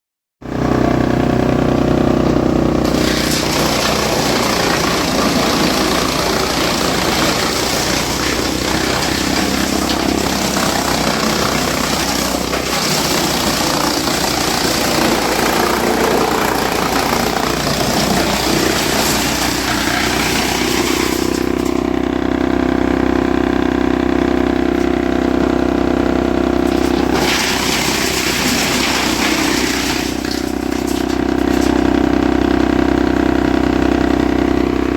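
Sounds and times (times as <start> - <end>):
wood chipper hum: 0.4 - 34.9
harsh grinding: 2.2 - 22.0, 26.6 - 32.1.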